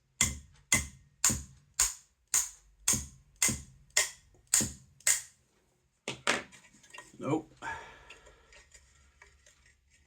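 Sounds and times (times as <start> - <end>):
hammer tapping on metal: 0.2 - 5.3.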